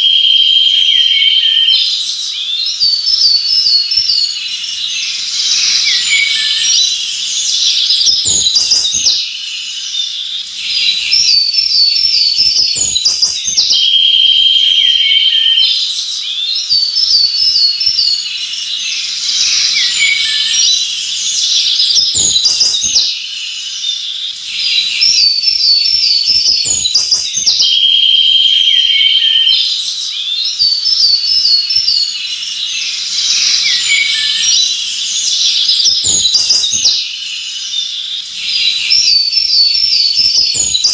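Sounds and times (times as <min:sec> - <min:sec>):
bird trill: 0:00.0 - 0:40.9
songbirds chirping and singing: 0:00.0 - 0:40.9
steady high hiss: 0:04.0 - 0:11.2, 0:16.1 - 0:27.7, 0:29.8 - 0:39.1.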